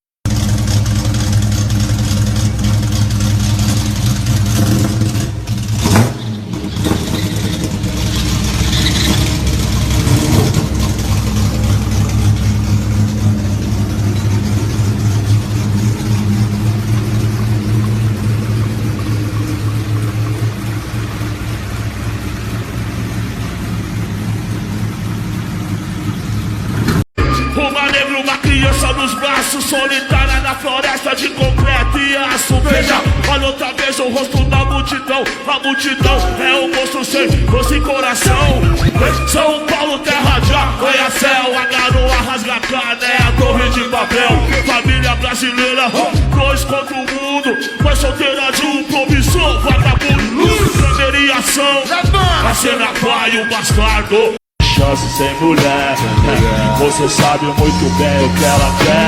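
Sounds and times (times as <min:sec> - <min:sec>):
car engine running: 0:00.2 - 0:27.4, 0:37.3 - 0:39.6, 0:40.2 - 0:40.8, 0:43.2 - 0:45.4, 0:49.1 - 0:51.3, 0:52.1 - 0:52.6, 0:53.7 - 0:59.0.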